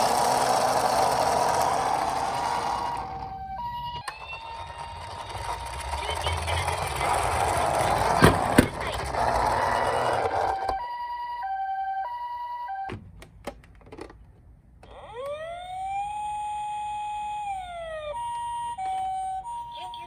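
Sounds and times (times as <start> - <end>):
two-tone ambulance siren: 0.1 - 13.0, 14.8 - 20.0
siren single wail: 1.8 - 5.4, 14.8 - 19.8.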